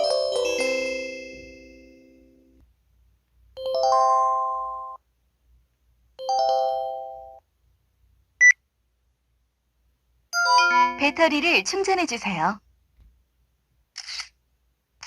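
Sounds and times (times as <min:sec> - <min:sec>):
phone alert chimes: 0:03.6 - 0:05.0, 0:10.4 - 0:11.0.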